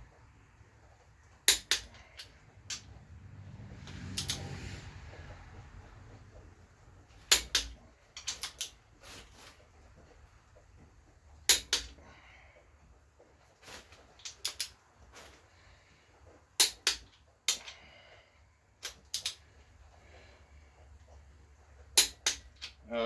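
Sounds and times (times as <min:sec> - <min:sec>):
torque wrench clicking: 0:01.5 - 0:02.9, 0:03.9 - 0:04.4, 0:07.3 - 0:08.8, 0:14.2 - 0:14.8, 0:16.6 - 0:17.8, 0:18.8 - 0:19.4.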